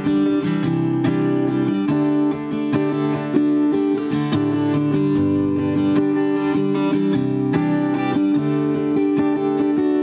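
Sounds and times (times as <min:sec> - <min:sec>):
acoustic guitar picking: 0:00.0 - 0:10.0.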